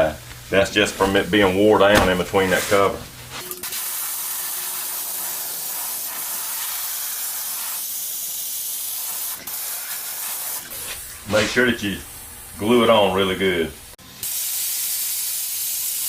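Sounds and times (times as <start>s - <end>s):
spray adhesive hissing: 3.6s - 12.0s, 14.2s - 16.0s.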